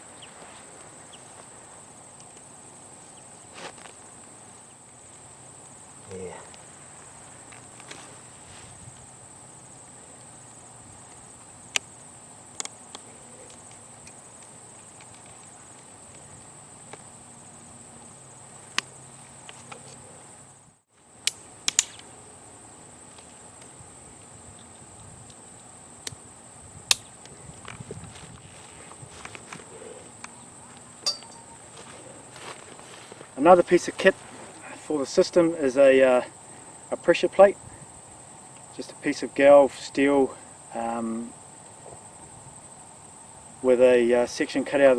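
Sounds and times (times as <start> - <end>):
insects trilling: 0.0 - 44.9
sharp clicks: 21.2 - 22.1, 26.9 - 27.8.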